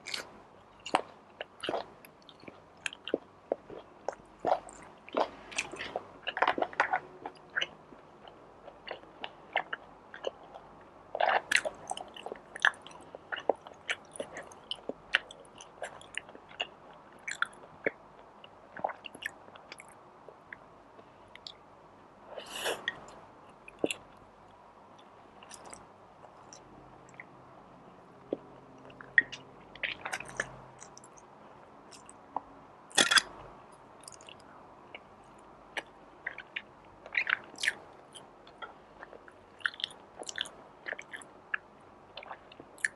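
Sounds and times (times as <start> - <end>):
person chewing crunchy food: 0.0 - 20.0, 25.4 - 27.3, 28.3 - 31.2, 32.9 - 33.4, 35.8 - 42.9.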